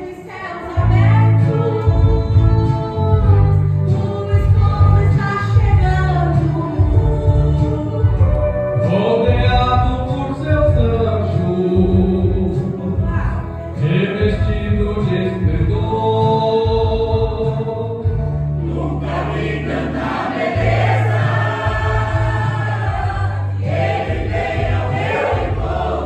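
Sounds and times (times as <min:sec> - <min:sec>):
choir singing gospel: 0:00.0 - 0:09.9, 0:18.4 - 0:26.0
long held bass notes: 0:00.8 - 0:26.0.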